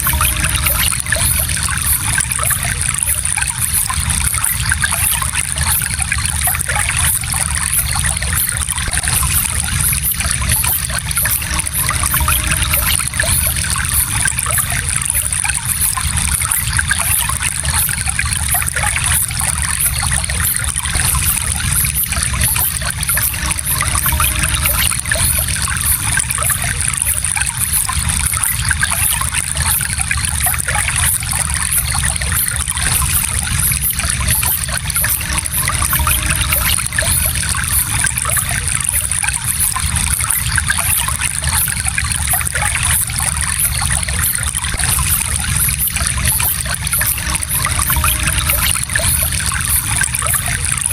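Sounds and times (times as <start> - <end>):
stream trickling and splashing: 0.0 - 50.9.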